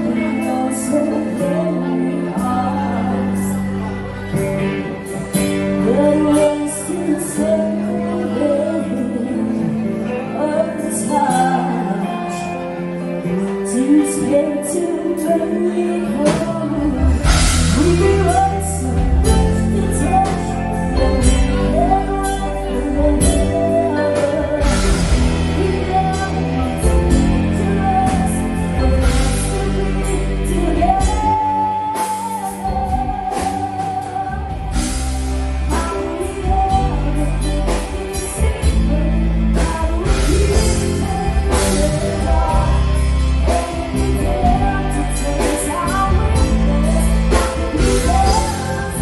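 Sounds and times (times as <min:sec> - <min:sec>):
instrumental backing with steady beat: 0:00.0 - 0:49.0
person singing a melody: 0:00.0 - 0:49.0
heavy bass: 0:16.1 - 0:49.0.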